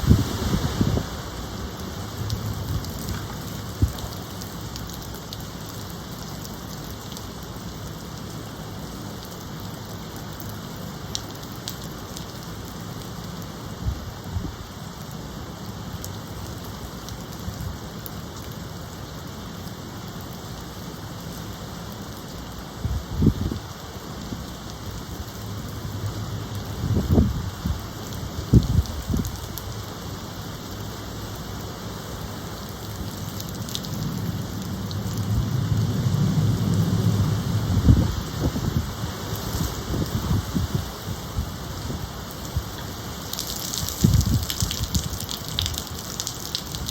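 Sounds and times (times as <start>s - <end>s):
steady rain falling: 0.0s - 46.9s
low rumble: 33.9s - 38.9s.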